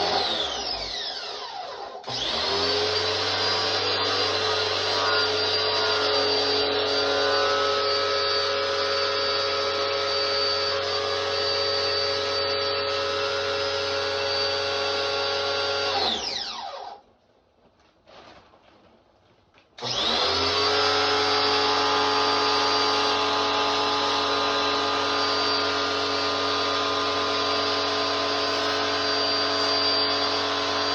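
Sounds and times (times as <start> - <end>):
electric motor whining hum: 0.0 - 16.9, 19.8 - 30.9.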